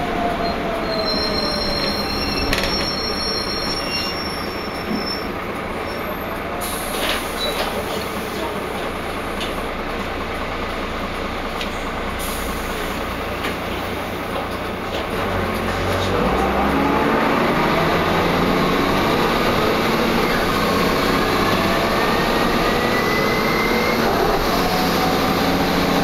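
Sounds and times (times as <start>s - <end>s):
high-pitched squealing tones: 0.0s - 6.3s
bus engine and road rumble: 0.0s - 26.0s.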